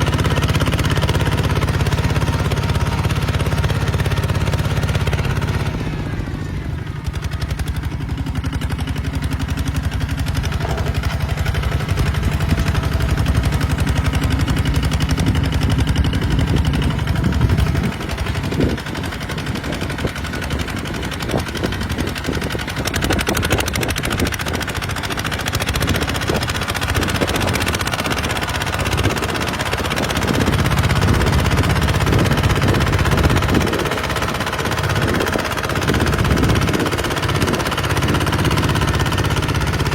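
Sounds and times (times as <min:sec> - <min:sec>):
diesel engine rattling exhaust: 0:00.0 - 0:39.9.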